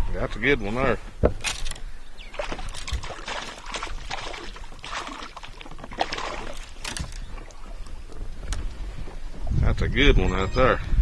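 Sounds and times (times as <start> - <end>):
fish thrashing water splashing: 2.3 - 8.0.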